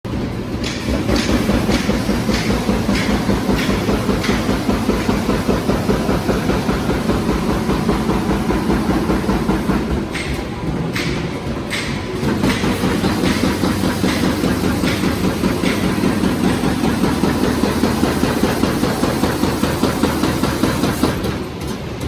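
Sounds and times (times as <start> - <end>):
bag making machine clattering: 0.1 - 22.0.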